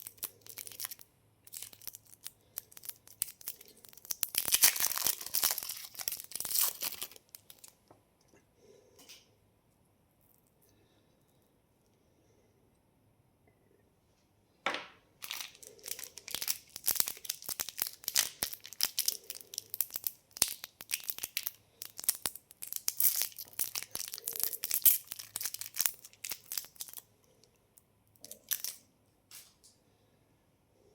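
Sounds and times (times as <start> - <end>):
candy wrapper crinkling: 0.0 - 7.8, 15.2 - 27.4, 28.1 - 29.5.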